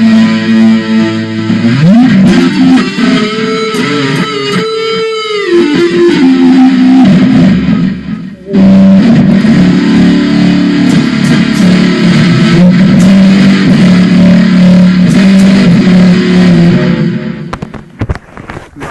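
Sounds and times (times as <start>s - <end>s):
loud electric guitar music: 0.0s - 18.1s.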